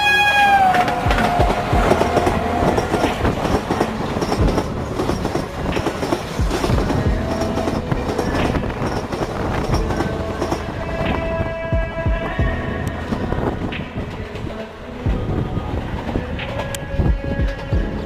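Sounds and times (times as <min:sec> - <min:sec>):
train wheels clattering over rail joints: 0:00.4 - 0:12.4, 0:15.9 - 0:18.0.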